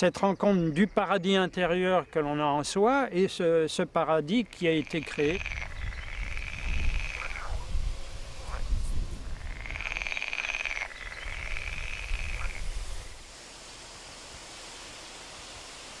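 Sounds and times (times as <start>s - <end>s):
faint steady hiss: 0.0s - 16.0s
frogs croaking in chorus: 0.3s - 2.6s, 4.3s - 13.2s.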